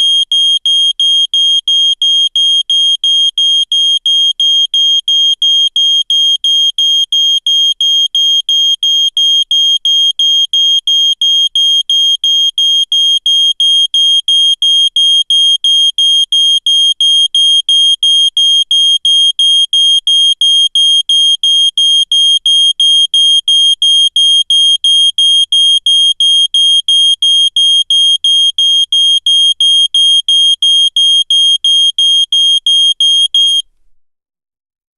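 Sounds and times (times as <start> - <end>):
smoke alarm beeping: 26.5 - 33.7.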